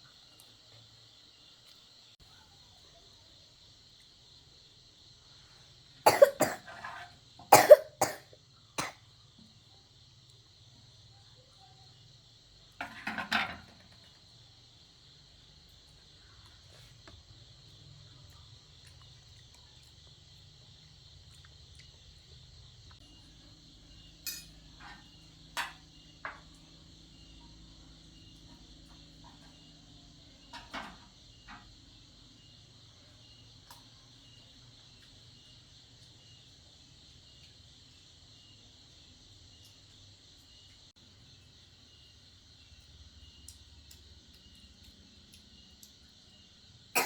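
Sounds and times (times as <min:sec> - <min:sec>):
insects chirring: 0:00.0 - 0:47.0.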